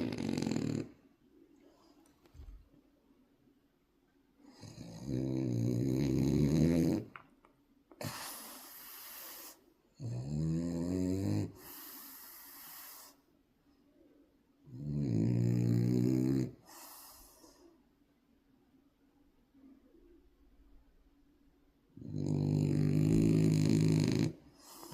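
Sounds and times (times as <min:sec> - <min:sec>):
puppy snoring: 0:00.0 - 0:01.1, 0:04.4 - 0:07.1, 0:08.0 - 0:13.2, 0:14.7 - 0:17.7, 0:22.0 - 0:24.9.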